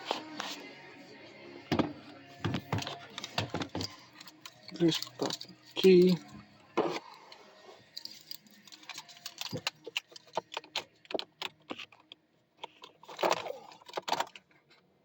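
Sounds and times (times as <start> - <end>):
car keys jingling: 3.2 - 6.2, 7.9 - 10.8.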